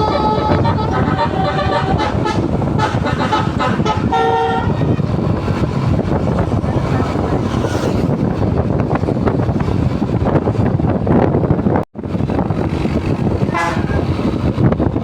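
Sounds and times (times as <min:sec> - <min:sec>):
musical air horn playing a tune: 0:00.0 - 0:03.0, 0:03.8 - 0:04.8, 0:13.5 - 0:14.0
low vehicle rumble: 0:00.0 - 0:15.0
wind on microphone: 0:00.0 - 0:15.0.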